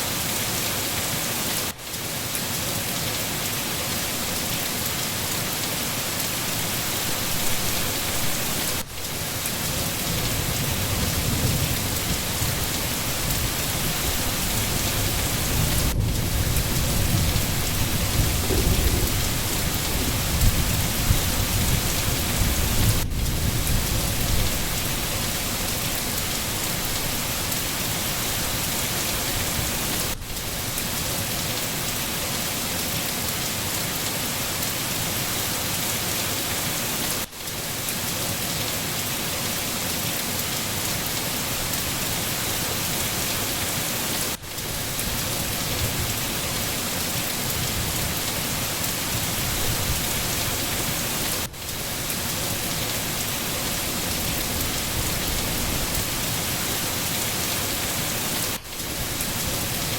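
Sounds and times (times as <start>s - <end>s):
rain falling in forest: 0.0s - 59.9s
low thunder rumble: 15.4s - 25.1s.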